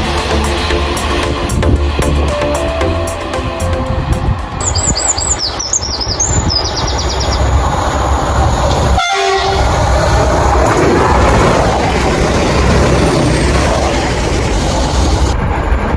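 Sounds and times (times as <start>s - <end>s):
train rumbling along rails: 0.0s - 15.9s
high warbling wheel squeals: 4.4s - 15.4s
train horn blast: 8.9s - 10.4s.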